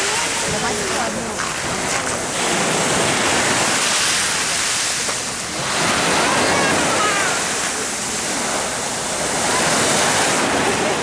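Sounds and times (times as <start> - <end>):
sea waves on shore: 0.0 - 11.0
wind: 0.0 - 11.0.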